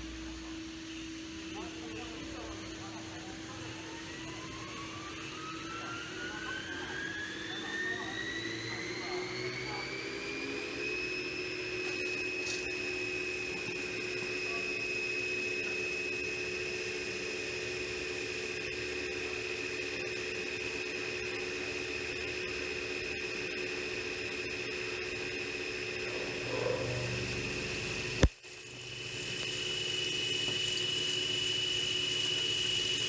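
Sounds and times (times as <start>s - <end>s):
machine hiss: 0.0s - 18.6s, 24.2s - 33.0s
high-pitched motor whine: 0.0s - 33.0s
low machine hum: 0.0s - 33.0s.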